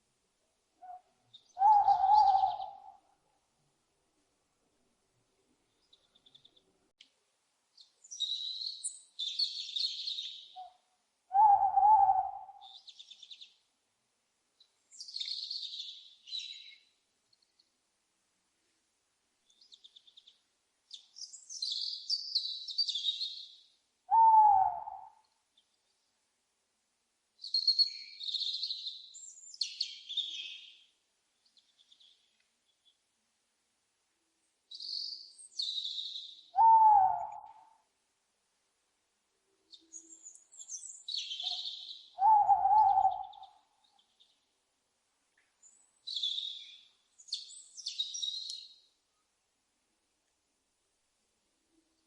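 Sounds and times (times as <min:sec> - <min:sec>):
owl hooting: 0:00.8 - 0:03.0, 0:10.6 - 0:12.8, 0:24.1 - 0:25.2, 0:36.5 - 0:37.8, 0:41.3 - 0:43.7
small birds chirping: 0:01.2 - 0:02.9, 0:05.6 - 0:07.0, 0:07.7 - 0:13.7, 0:14.6 - 0:17.8, 0:19.4 - 0:26.2, 0:27.4 - 0:33.1, 0:34.7 - 0:37.6, 0:39.7 - 0:44.5, 0:45.3 - 0:49.0.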